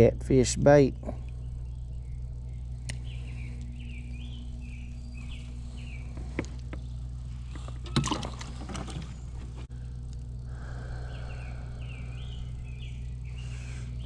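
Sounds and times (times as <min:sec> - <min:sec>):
steady low hum: 0:00.0 - 0:14.0
short chirping calls: 0:01.2 - 0:08.0.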